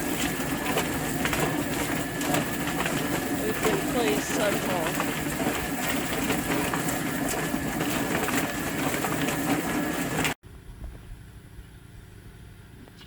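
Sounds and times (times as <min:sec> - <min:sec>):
birds clattering in drum: 0:00.0 - 0:10.4
poultry plucker motor hum: 0:00.0 - 0:13.0.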